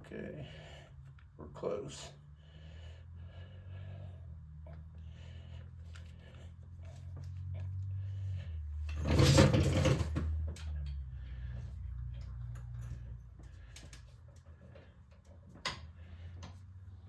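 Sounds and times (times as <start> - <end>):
hand tools scraping rattle: 8.8 - 10.9.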